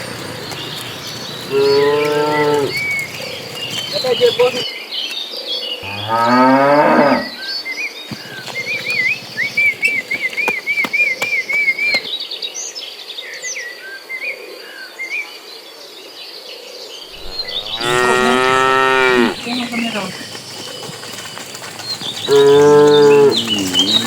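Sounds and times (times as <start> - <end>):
small bird chirping: 0.0 - 4.6, 8.1 - 12.1, 17.1 - 24.0
cow mooing: 0.3 - 4.6, 5.8 - 7.3, 17.2 - 20.4, 21.0 - 24.0.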